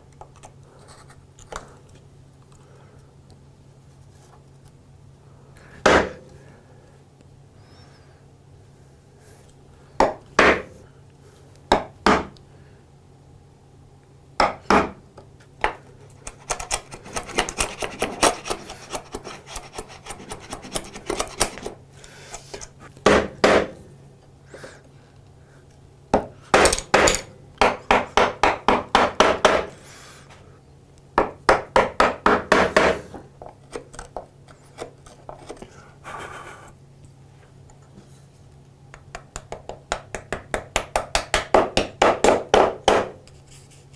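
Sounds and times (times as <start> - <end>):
hand scraping hard surface: 16.4 - 23.0.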